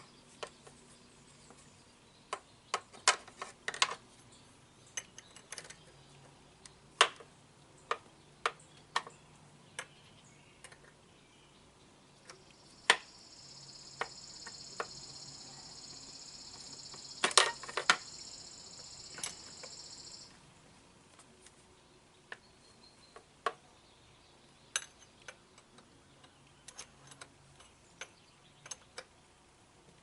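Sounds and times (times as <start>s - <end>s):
high-pitched hiss: 12.4s - 20.4s
metallic clicks of hand tools: 24.7s - 29.1s.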